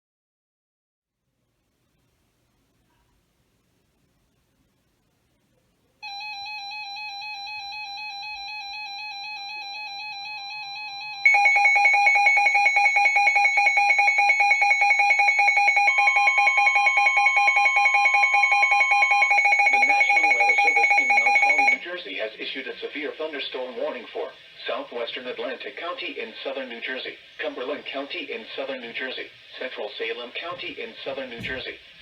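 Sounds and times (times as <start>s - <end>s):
faint high steady tone: 5.5s - 21.8s
rapidly pulsing alert tone: 11.2s - 21.8s.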